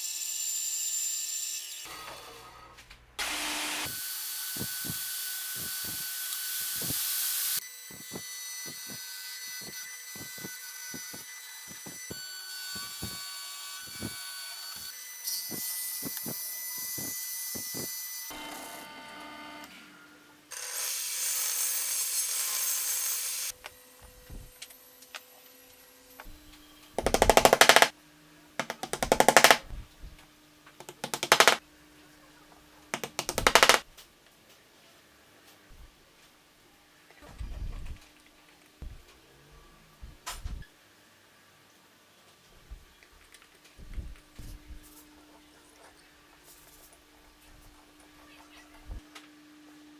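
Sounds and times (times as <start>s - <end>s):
clicks and taps: 27.0s - 27.9s, 28.6s - 29.8s, 30.8s - 31.6s, 33.0s - 33.8s.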